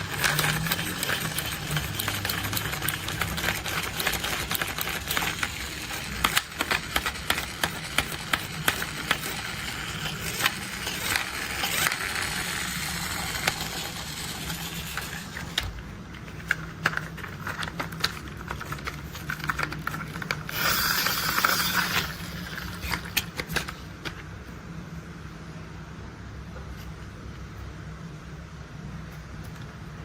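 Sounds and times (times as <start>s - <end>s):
plastic toys clicking: 0.0s - 15.7s, 16.4s - 23.7s
steady low hum: 0.0s - 30.0s.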